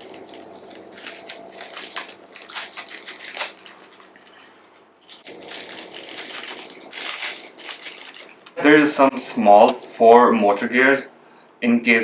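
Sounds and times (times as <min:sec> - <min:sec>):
plastic packaging crinkling: 0:00.0 - 0:08.6.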